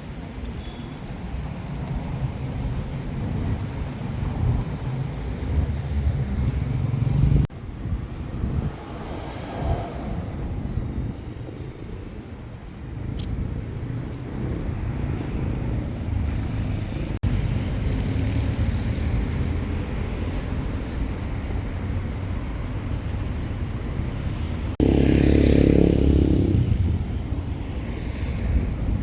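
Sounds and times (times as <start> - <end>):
low rumble of passing cars: 13.6 - 29.0
loud vehicle passing close: 24.8 - 27.1.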